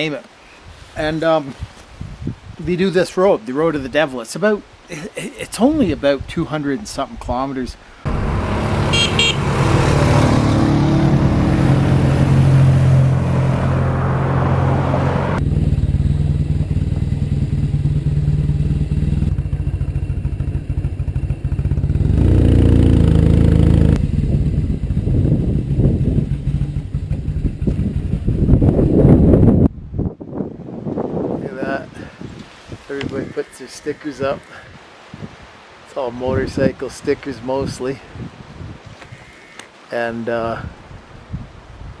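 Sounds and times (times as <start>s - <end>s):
motorcycle engine running: 8.1s - 13.5s, 15.0s - 29.6s.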